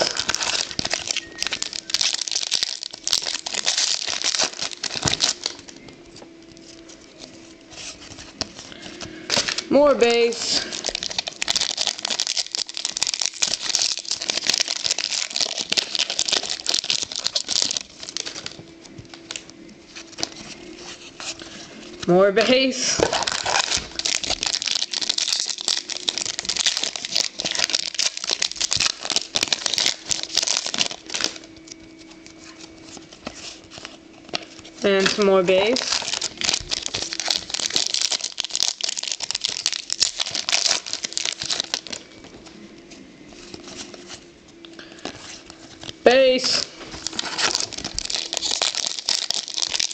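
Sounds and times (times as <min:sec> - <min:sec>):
cards rustling and clicking: 0:00.0 - 0:49.9
foil wrappers crinkling: 0:00.0 - 0:49.9.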